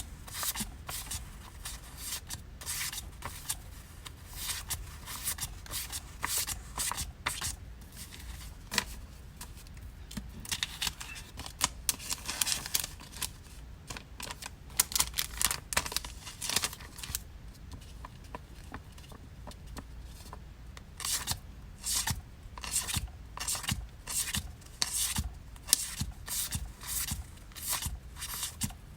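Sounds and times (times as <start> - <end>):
paper and plastic rustling: 0.0 - 20.4.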